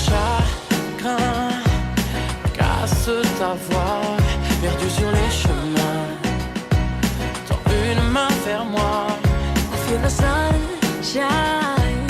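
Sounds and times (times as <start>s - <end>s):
pop music with beat and bass: 0.0s - 12.0s.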